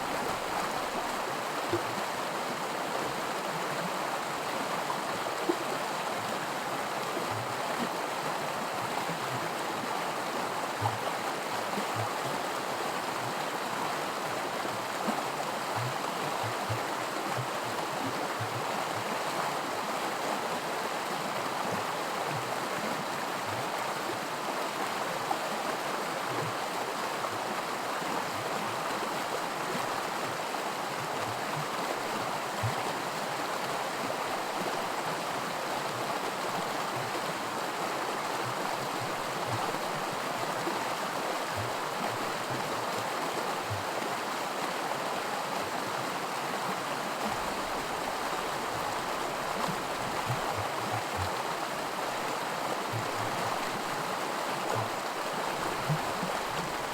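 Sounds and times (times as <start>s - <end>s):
creek rushing over rocks: 0.0s - 56.9s
water plops and gurgles: 47.4s - 52.3s.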